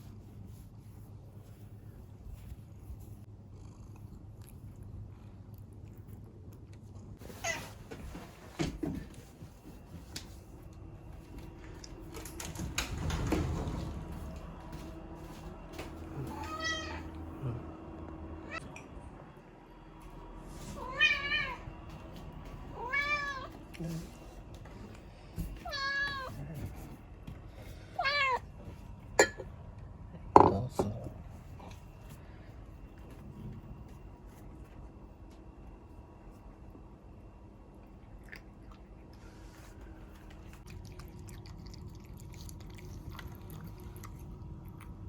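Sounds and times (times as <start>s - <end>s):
cat meowing: 16.2s - 17.2s, 20.8s - 21.6s, 22.7s - 23.5s, 25.6s - 26.4s, 28.0s - 28.4s.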